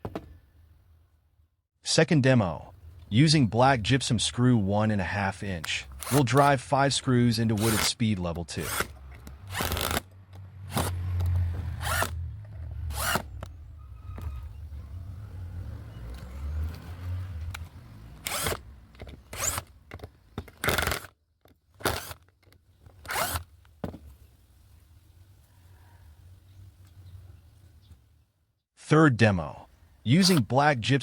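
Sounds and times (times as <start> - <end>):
impact driver motor hum: 5.9 - 6.5, 12.9 - 13.3, 18.2 - 18.6
impact driver sharp bursts: 5.9 - 6.5, 7.6 - 8.0, 8.6 - 11.0, 11.7 - 12.2, 12.8 - 13.3, 18.2 - 18.7, 19.3 - 19.7, 20.6 - 21.1, 23.1 - 23.5.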